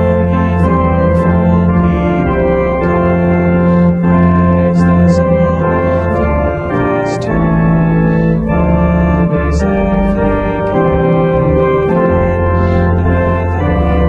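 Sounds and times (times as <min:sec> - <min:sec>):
organ playing a hymn: 0:00.0 - 0:14.0.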